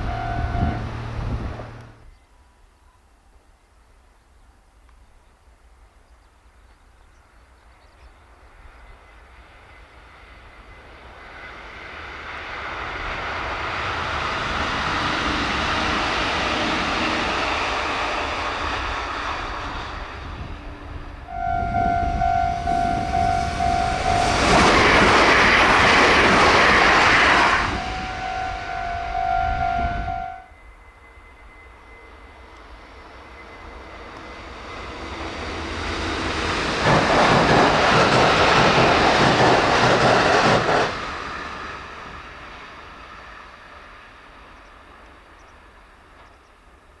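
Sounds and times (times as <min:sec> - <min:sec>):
level crossing warning bell: 0:00.0 - 0:02.0, 0:21.3 - 0:25.3, 0:27.6 - 0:32.4
electric train passing: 0:00.0 - 0:02.2, 0:08.0 - 0:47.0.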